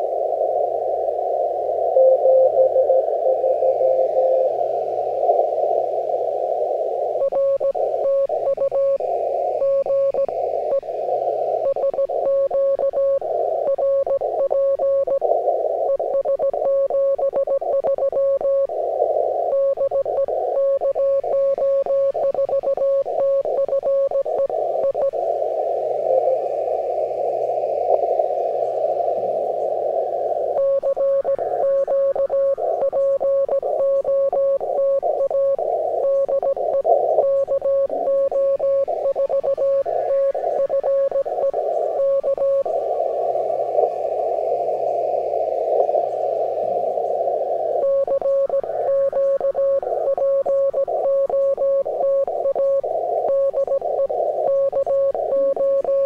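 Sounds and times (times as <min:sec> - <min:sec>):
radio receiver hiss: 0:00.0 - 0:56.0
morse code tone: 0:02.0 - 0:04.5, 0:07.2 - 0:09.0, 0:11.6 - 0:18.7, 0:19.5 - 0:25.1, 0:30.6 - 0:42.7, 0:47.8 - 0:56.0.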